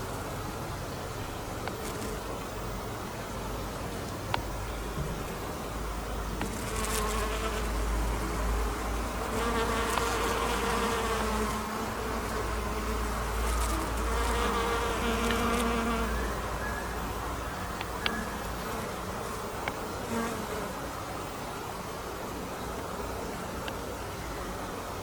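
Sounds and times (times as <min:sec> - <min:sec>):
bee buzzing: 0:01.6 - 0:02.8, 0:04.1 - 0:21.5.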